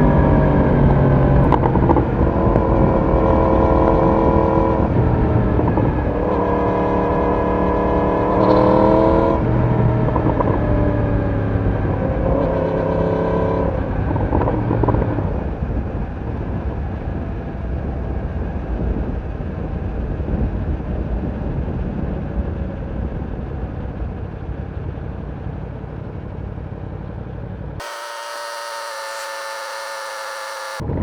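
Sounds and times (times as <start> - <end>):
motorcycle engine revving: 27.8 - 30.8.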